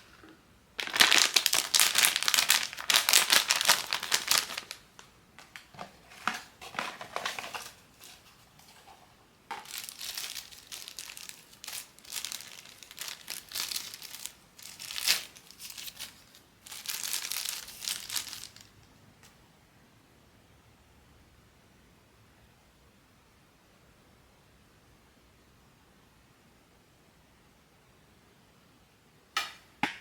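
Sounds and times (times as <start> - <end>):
packaging crinkling: 0.8 - 8.4, 9.5 - 18.9.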